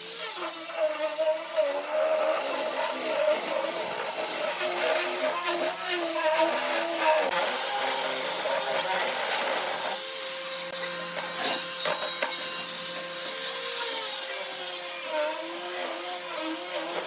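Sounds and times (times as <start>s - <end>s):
hand tool rasping wood: 0.0s - 17.0s.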